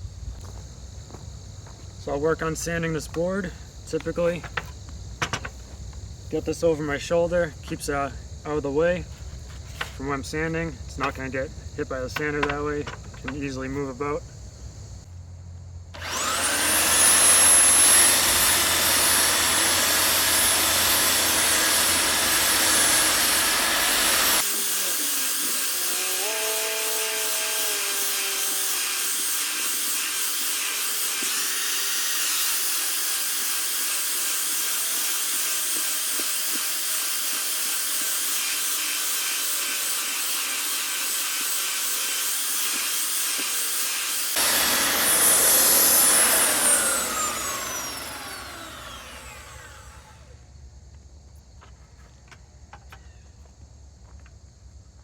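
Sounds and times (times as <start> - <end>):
motor winding down whine: 16.0 - 25.0, 44.3 - 50.4
belt sander sanding wood: 16.0 - 50.4.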